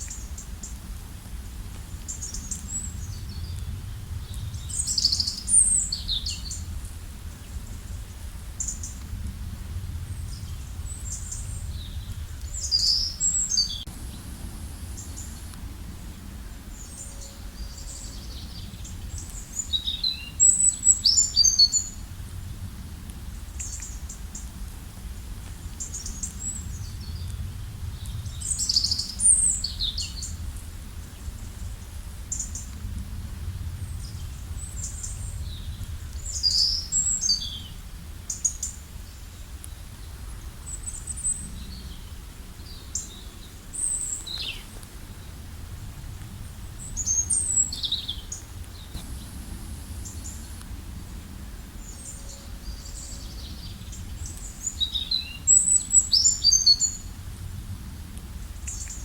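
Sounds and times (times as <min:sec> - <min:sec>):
low background rumble: 0:00.0 - 0:38.3, 0:41.3 - 0:54.8.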